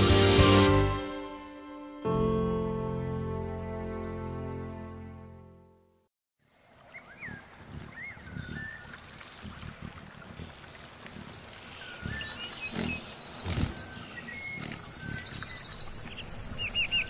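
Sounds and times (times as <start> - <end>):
tender music: 0.0 - 6.1
outdoor ambience: 6.4 - 17.0
bird-like calls: 6.9 - 17.0.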